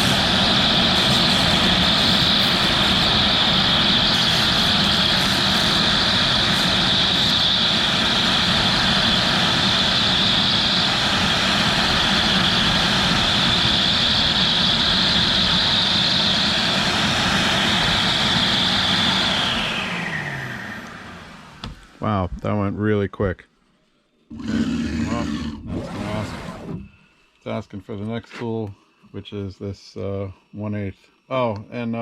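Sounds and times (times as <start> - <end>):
router spindle whine: 0.0 - 22.0, 24.3 - 27.4
router cutting plastic: 25.6 - 26.9.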